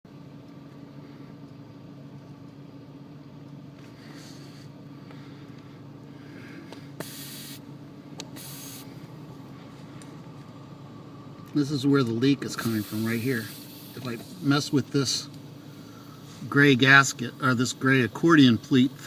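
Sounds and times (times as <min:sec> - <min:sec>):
car engine idling: 0:00.1 - 0:19.0
hissing bursts: 0:07.0 - 0:09.0, 0:12.6 - 0:14.5.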